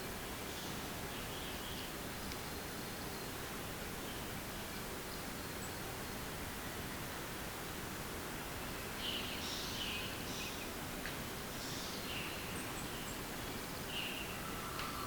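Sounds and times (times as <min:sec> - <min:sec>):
steady outdoor hiss: 0:00.0 - 0:15.0
bird calling in high phrases: 0:14.0 - 0:15.0.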